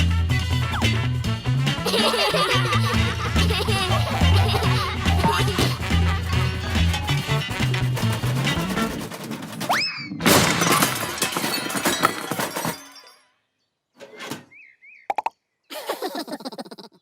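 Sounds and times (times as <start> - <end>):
clattering crash of breaking things: 4.2 - 13.3.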